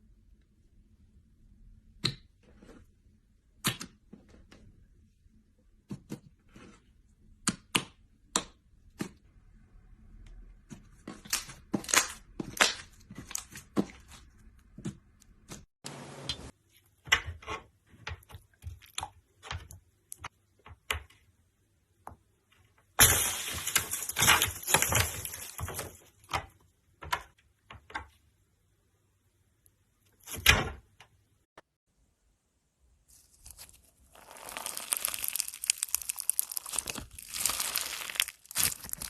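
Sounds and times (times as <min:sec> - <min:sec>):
brittle material cracking: 0:23.0 - 0:26.4, 0:33.1 - 0:39.0.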